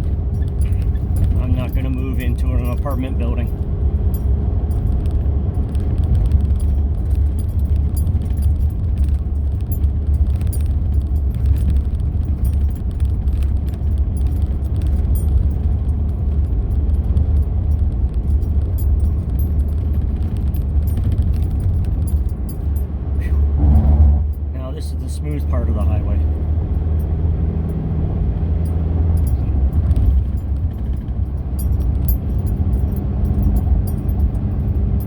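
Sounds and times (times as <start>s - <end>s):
light rattling clicks: 0.0s - 23.4s
road noise rumble: 0.0s - 35.0s.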